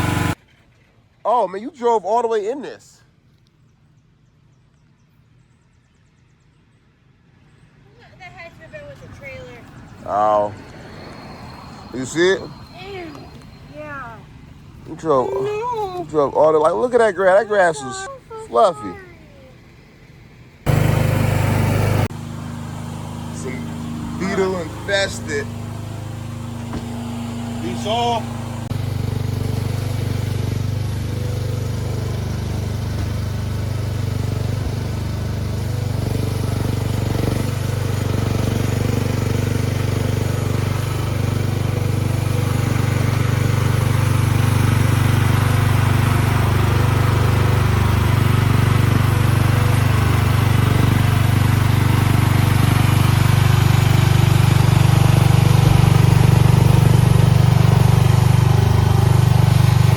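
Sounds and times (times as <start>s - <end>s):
skid steer engine running: 0.0s - 0.9s, 20.4s - 59.9s.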